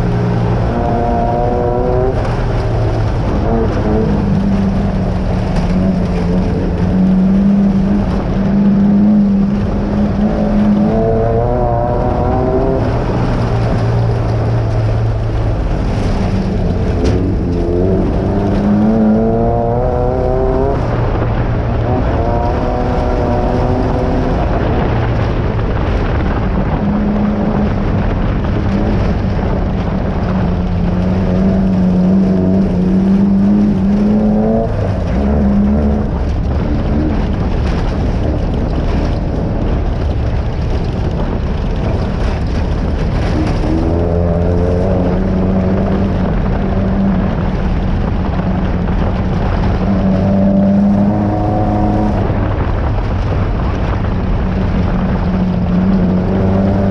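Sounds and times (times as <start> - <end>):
heavy rushing noise: 0.0 - 56.9
race car engine running hard: 0.0 - 56.9.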